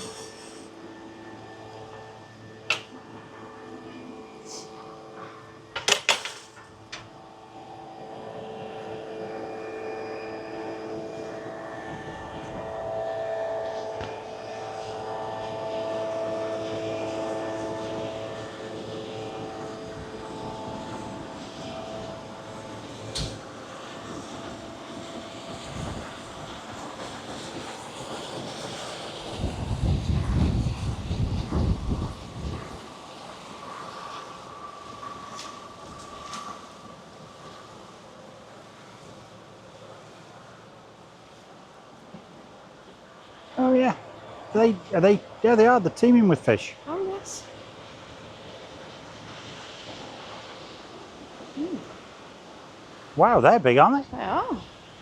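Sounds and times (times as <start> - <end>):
steady mechanical drone: 0.0 - 55.0
sharp clicks or knocks: 2.7 - 2.9.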